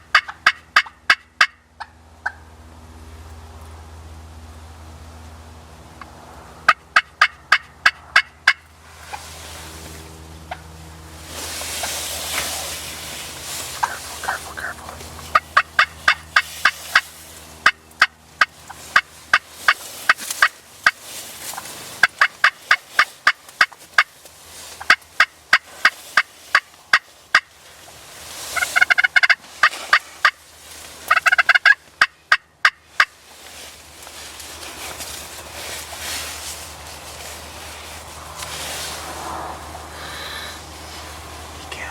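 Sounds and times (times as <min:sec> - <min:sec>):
turkey calls: 0:00.0 - 0:02.5, 0:06.7 - 0:09.2, 0:13.4 - 0:33.2.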